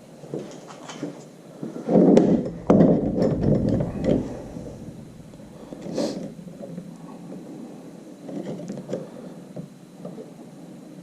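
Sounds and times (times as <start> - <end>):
low rustle: 2.2 - 7.7.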